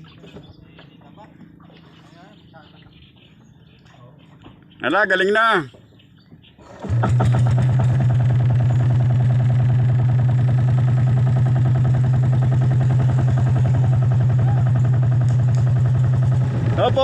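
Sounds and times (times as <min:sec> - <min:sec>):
boat engine running: 0:06.6 - 0:17.0.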